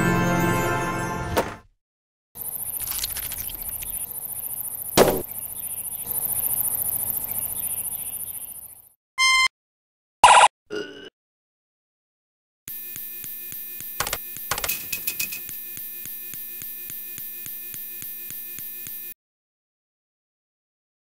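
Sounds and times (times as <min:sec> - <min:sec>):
high-pitched rapid chirring: 0:02.4 - 0:08.9
short pitched beeps: 0:09.2 - 0:09.5
sharp click: 0:14.0 - 0:15.4.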